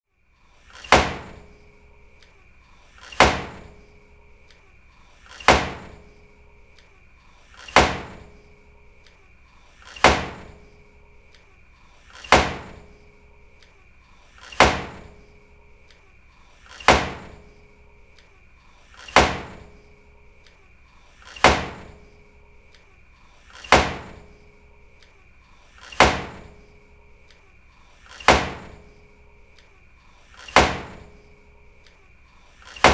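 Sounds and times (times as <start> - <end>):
door slamming: 0.8 - 1.7, 3.0 - 4.0, 5.2 - 6.9, 7.5 - 8.6, 9.8 - 10.9, 12.1 - 13.2, 14.4 - 15.4, 16.6 - 17.7, 19.0 - 20.0, 21.3 - 22.2, 23.5 - 24.5, 25.8 - 26.8, 28.0 - 29.1, 30.3 - 31.4, 32.6 - 32.9.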